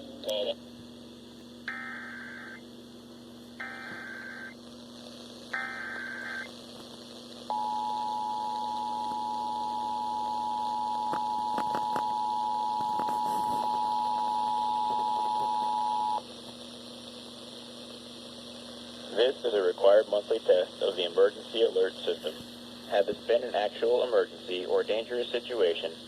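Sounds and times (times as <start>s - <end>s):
two-tone alarm: 1.7s - 2.6s, 3.6s - 4.5s, 7.5s - 16.2s.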